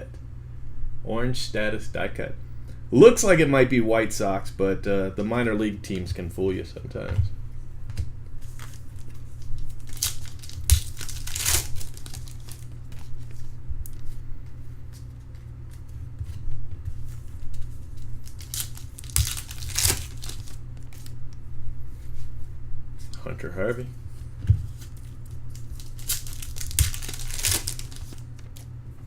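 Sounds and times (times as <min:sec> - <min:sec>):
steady low hum: 0:00.0 - 0:29.0
wrappers tearing and crinkling: 0:08.4 - 0:13.4, 0:17.6 - 0:21.1, 0:24.7 - 0:28.7.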